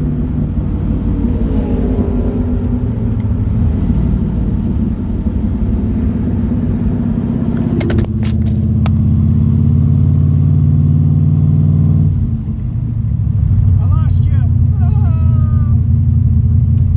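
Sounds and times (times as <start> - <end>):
car engine running: 0.0 - 16.9.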